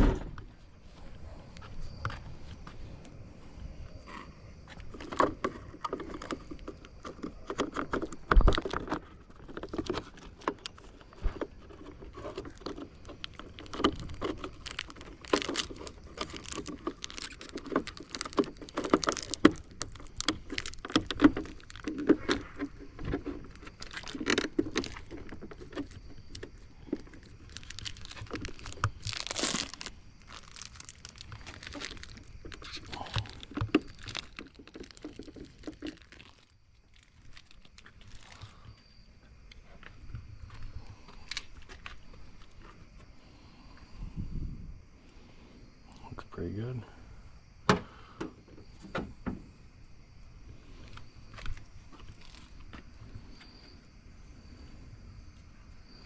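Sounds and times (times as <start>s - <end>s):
plastic parts clicking and knocking: 4.7s - 38.5s.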